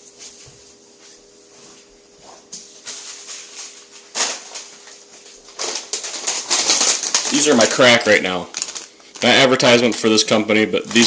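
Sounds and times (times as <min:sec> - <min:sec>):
handling rustles and clatters: 0:02.8 - 0:07.8.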